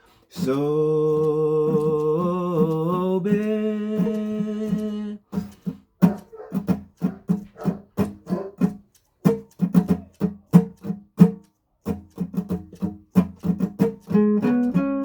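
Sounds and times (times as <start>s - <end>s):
held changing tone: 0.3s - 8.6s
guitar plucking single notes: 12.4s - 15.0s.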